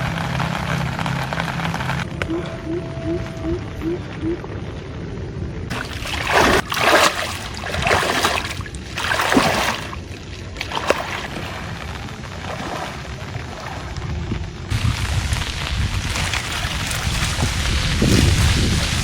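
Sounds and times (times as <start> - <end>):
water splashing and sloshing: 5.6 - 19.0.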